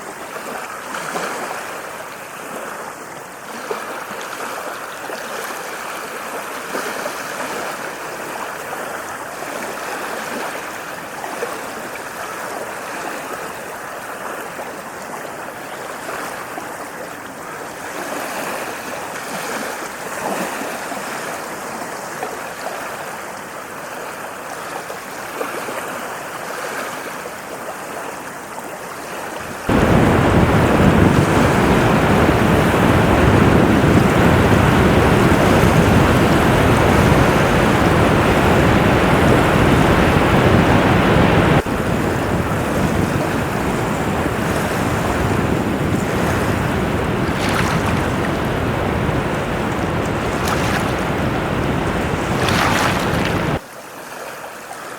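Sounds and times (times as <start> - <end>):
small waves lapping on shore: 0.0 - 54.9.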